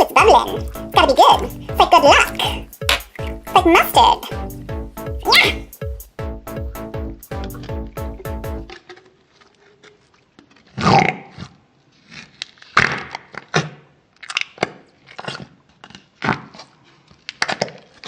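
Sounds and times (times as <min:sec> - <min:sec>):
wet putty squelches: 0:00.5 - 0:03.6.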